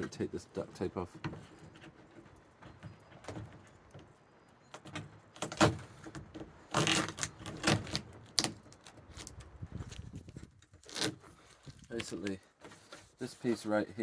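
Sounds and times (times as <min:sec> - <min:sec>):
tape ripping off plastic: 0:06.7 - 0:12.3.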